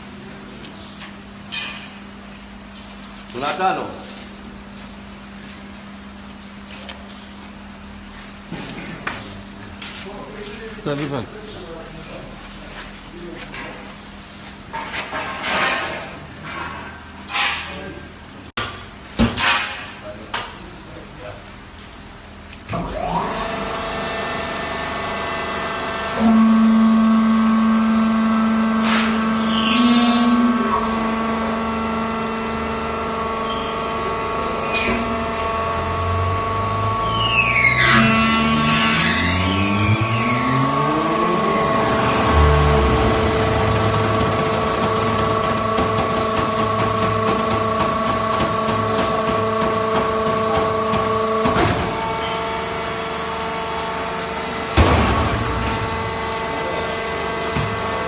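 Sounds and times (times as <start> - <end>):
hydraulic power unit motor hum: 21.5 - 58.0
baler machine whine: 22.8 - 58.0.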